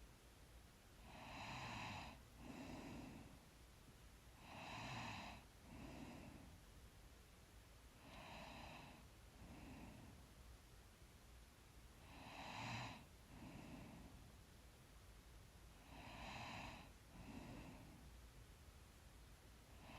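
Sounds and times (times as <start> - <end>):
sleeping person breathing: 1.0 - 3.5, 4.4 - 6.7, 8.0 - 10.3, 12.0 - 14.4, 15.7 - 18.2.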